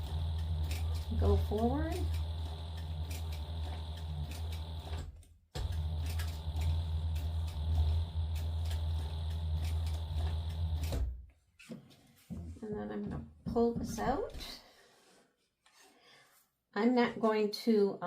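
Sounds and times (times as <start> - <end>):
sewing machine motor running: 0.0 - 11.0.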